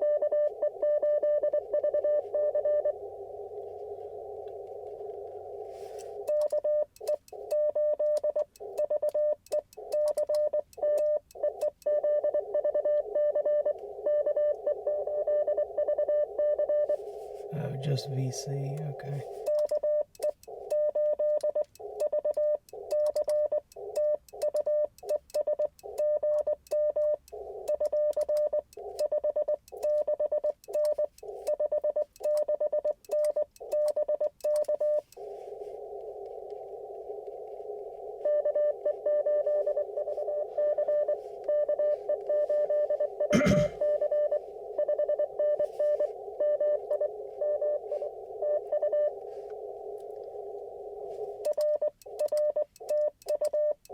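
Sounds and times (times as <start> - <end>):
radio band hiss: 17.1 - 19.5.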